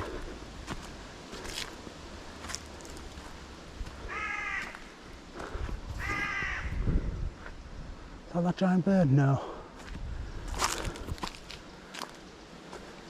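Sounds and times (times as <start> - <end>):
crow cawing: 3.8 - 6.9.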